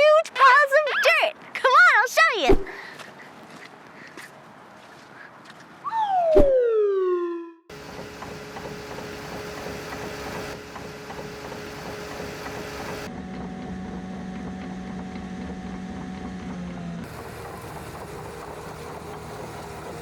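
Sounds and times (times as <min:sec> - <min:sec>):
bulldozer engine running: 0:07.7 - 0:20.0.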